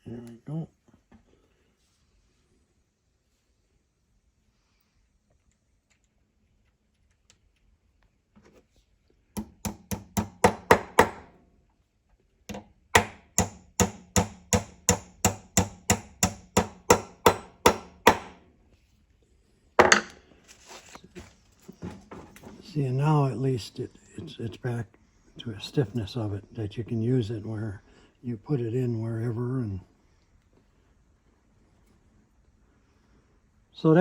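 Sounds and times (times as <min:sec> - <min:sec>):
hammer tapping on metal: 0:09.4 - 0:11.3, 0:12.5 - 0:18.4.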